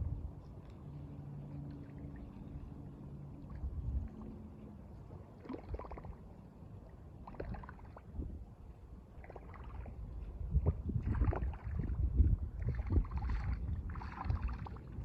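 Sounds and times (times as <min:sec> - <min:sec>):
wind buffeting microphone: 0:00.0 - 0:00.4, 0:03.5 - 0:04.3, 0:07.3 - 0:08.7, 0:09.5 - 0:15.0.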